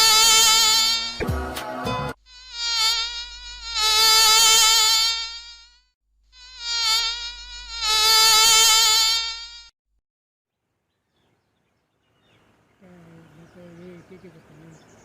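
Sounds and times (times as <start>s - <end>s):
flying insect buzzing: 0.0s - 1.2s, 2.2s - 9.7s.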